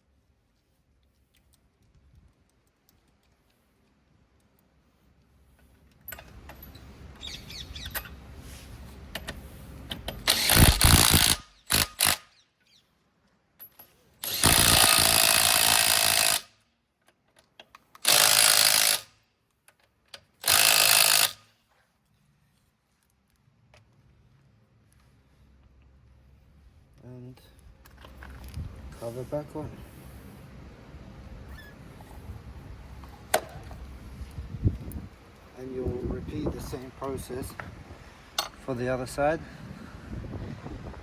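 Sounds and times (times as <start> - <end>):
impact wrench whirring: 10.2 - 12.3, 14.2 - 16.6, 18.0 - 19.2, 20.4 - 21.5.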